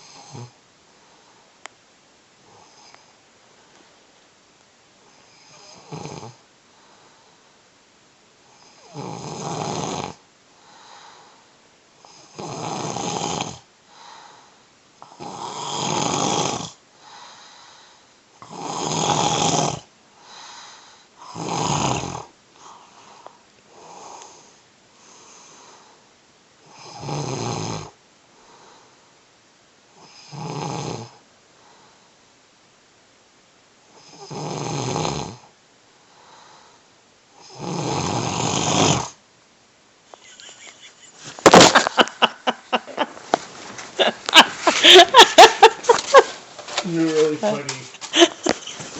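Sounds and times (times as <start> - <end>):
man snoring: 5.4 - 6.4, 8.8 - 10.2, 12.2 - 13.6, 15.1 - 16.8, 18.4 - 19.9, 21.2 - 22.3, 26.7 - 28.0, 30.0 - 31.2, 34.0 - 35.4, 37.4 - 39.2
faint breaths: 6.6 - 7.6, 10.5 - 11.6, 13.8 - 14.7, 16.9 - 18.2, 20.1 - 21.3, 22.6 - 26.2, 28.3 - 29.2, 31.5 - 32.3, 35.9 - 37.0.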